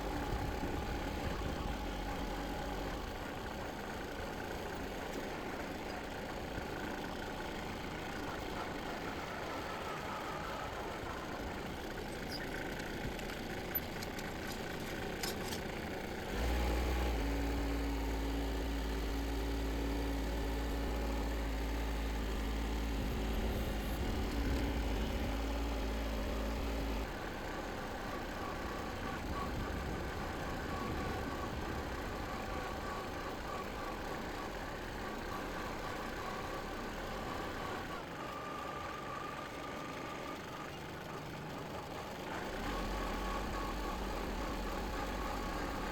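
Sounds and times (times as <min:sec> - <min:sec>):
small engine running: 0:00.0 - 0:45.9.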